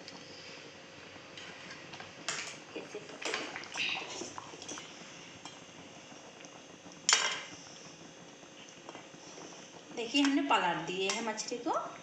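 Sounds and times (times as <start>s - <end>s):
metal clank on pan: 7.1s - 7.4s.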